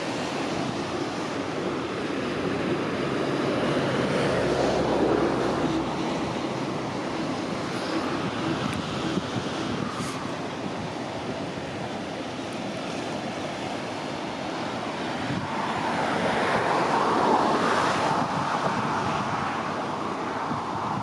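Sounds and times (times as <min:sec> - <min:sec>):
sea water rushing: 0:00.0 - 0:21.0
wind rushing: 0:02.3 - 0:11.7.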